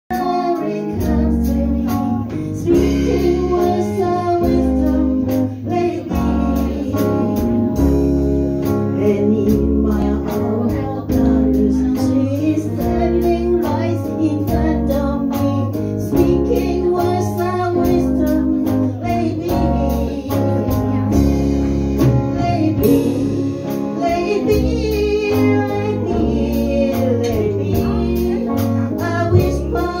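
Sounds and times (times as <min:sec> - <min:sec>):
pop song with singing: 0:00.1 - 0:30.0.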